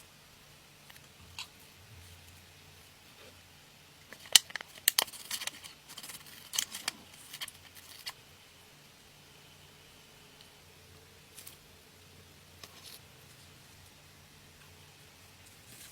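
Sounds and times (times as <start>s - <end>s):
faint low hum: 0.0s - 15.9s.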